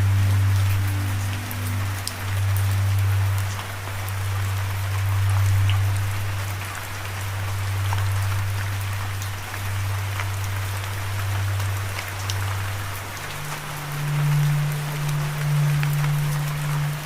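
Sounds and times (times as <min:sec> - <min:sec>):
low drone: 0:00.0 - 0:17.0
raindrops ticking: 0:00.0 - 0:17.0
steady rain: 0:00.0 - 0:17.0.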